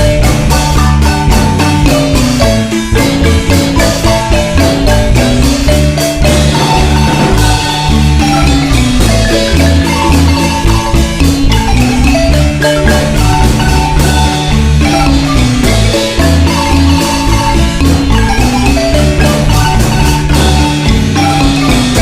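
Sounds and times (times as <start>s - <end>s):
marimba melody: 0.0s - 22.0s
steady bass notes: 0.0s - 22.0s.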